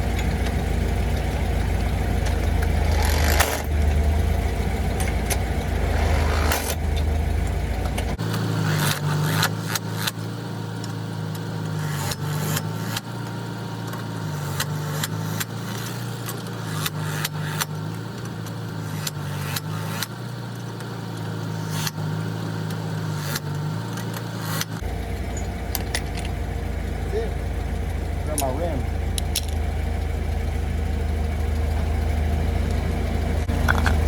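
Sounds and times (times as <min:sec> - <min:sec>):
steady low hum: 0:00.0 - 0:08.2
metal tools clinking: 0:25.2 - 0:26.4.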